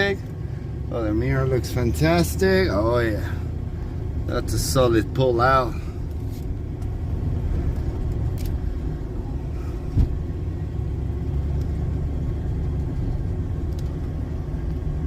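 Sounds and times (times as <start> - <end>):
truck engine and road rumble: 0.0 - 15.0
sharp thump: 9.9 - 10.2.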